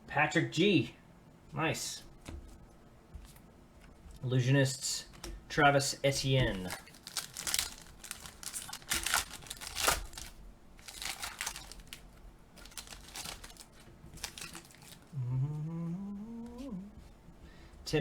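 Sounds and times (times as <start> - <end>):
card pack wrapper crinkling and tearing: 6.4 - 15.1.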